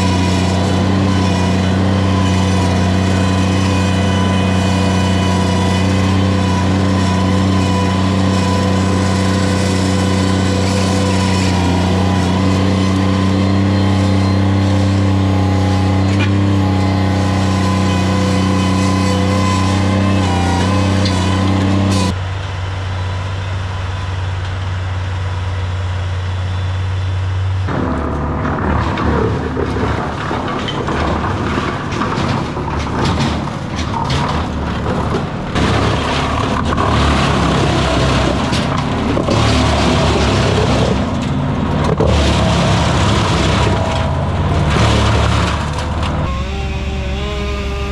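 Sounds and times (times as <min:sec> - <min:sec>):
rough uneven machine noise: 0:00.0 - 0:22.2, 0:42.1 - 0:47.9
large engine running: 0:00.0 - 0:28.8, 0:32.0 - 0:47.9.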